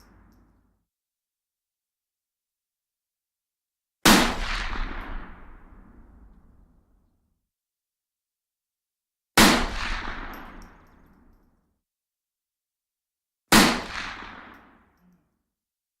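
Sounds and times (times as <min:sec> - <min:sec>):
rifle shots with echo: 0:09.4 - 0:11.0, 0:13.5 - 0:14.7.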